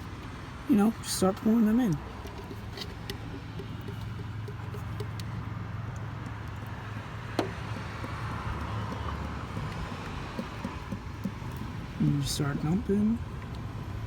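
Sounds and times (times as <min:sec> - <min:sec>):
vehicle hum: 0:00.0 - 0:14.0.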